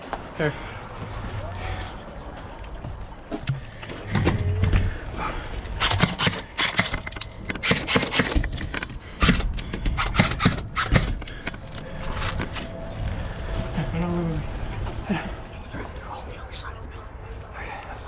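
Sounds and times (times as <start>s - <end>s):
running footsteps: 0.0s - 13.8s.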